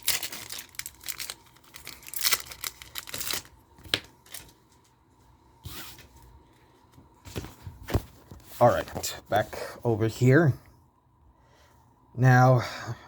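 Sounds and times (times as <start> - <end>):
foil wrapper tearing and crinkling: 0.0 - 4.6.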